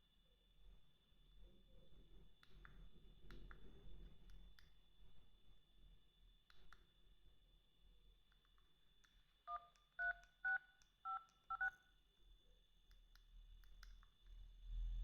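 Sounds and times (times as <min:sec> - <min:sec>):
phone keypad dial tones: 0:09.5 - 0:11.8.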